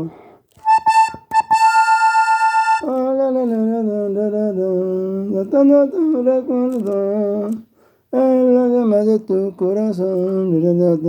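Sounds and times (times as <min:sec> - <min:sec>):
button accordion playing: 0:00.6 - 0:02.9.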